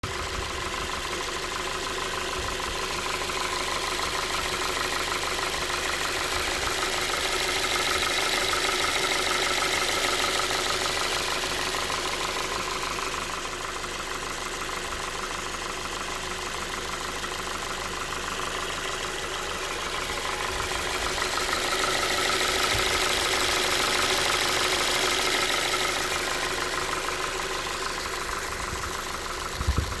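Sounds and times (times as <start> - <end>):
engine running with a knock: 27.9 - 30.0.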